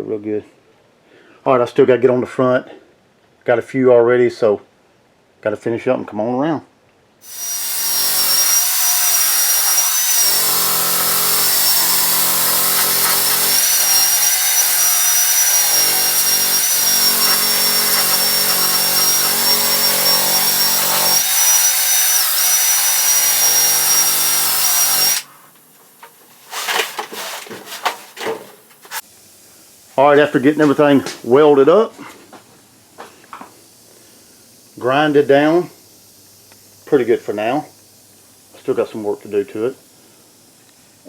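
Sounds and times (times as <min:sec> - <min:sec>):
electric grinder whining: 0:07.2 - 0:25.3
grinding wheel on metal: 0:07.3 - 0:25.3.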